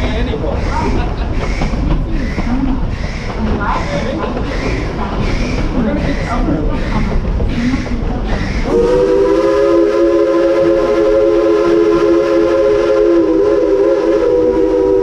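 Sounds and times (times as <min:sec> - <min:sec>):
steam locomotive chime whistle: 0:08.7 - 0:15.0.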